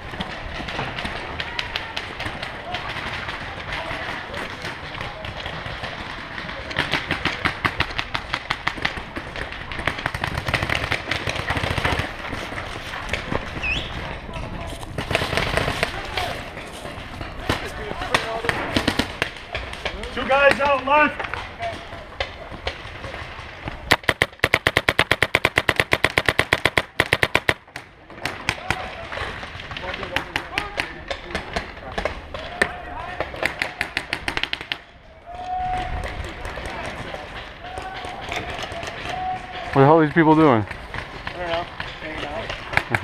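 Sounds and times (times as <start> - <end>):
paintball markers firing: 0.1 - 14.1, 14.7 - 34.9.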